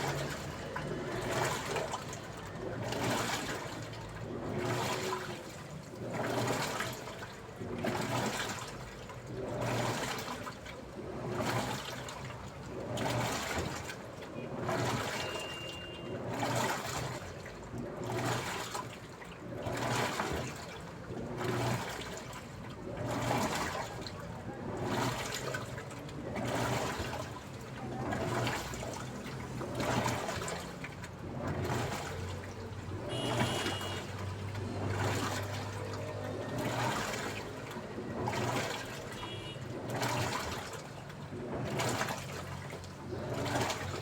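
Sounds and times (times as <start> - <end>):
washing machine water sloshing: 0.0 - 44.0
low motor hum: 24.6 - 44.0.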